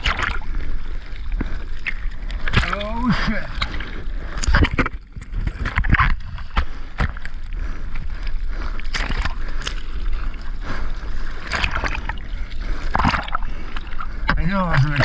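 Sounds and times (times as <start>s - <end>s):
sharp splashes: 0.0s - 0.6s, 1.9s - 4.9s, 11.4s - 15.0s
ocean water rushing: 0.0s - 15.0s.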